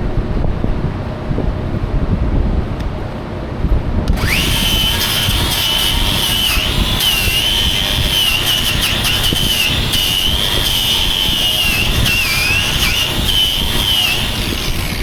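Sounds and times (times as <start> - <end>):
angle grinder on steel: 4.1 - 15.0.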